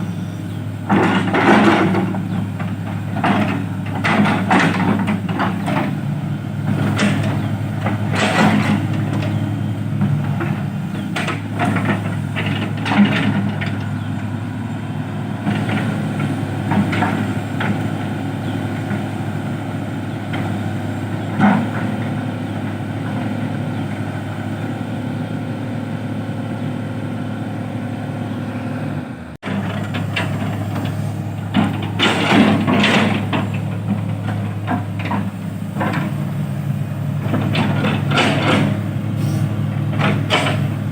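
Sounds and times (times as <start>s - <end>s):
excavator diesel engine running: 0.0s - 40.9s
machine knocks and clanks: 0.9s - 6.0s, 6.6s - 14.1s, 15.4s - 18.0s, 29.4s - 36.3s, 37.2s - 38.9s, 39.7s - 40.9s.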